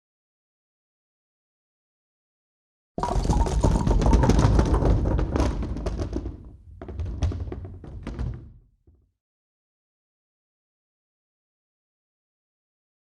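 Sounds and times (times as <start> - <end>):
dense clatter of knocks: 3.0 - 9.1.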